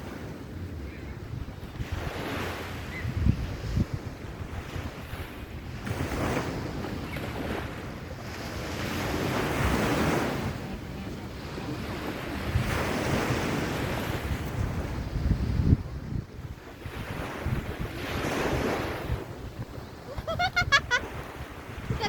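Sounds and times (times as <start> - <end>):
wind rumbling on microphone: 0.0 - 22.0.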